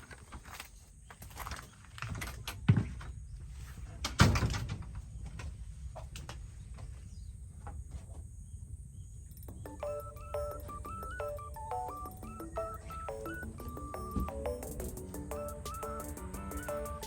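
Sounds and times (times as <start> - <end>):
loud thumps: 11.5 - 16.0.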